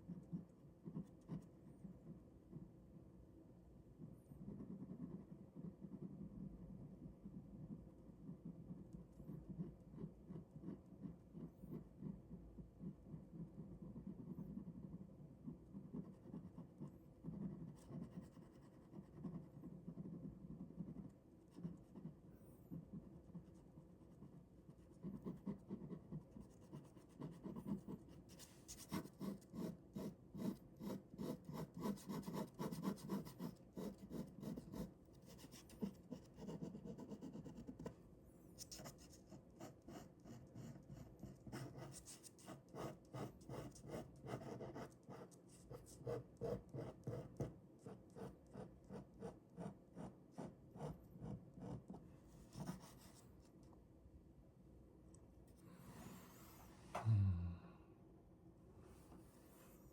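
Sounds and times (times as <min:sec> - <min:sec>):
pen scratching on paper: 0:04.3 - 0:22.2, 0:22.8 - 0:38.0, 0:38.6 - 0:53.2.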